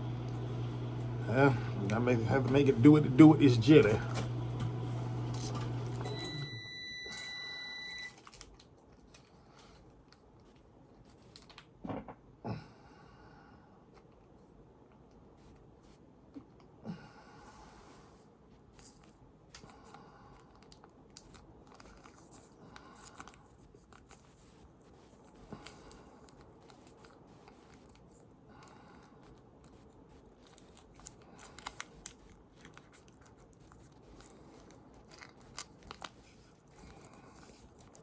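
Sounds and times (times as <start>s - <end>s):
food packets rustling: 20.6s - 38.0s.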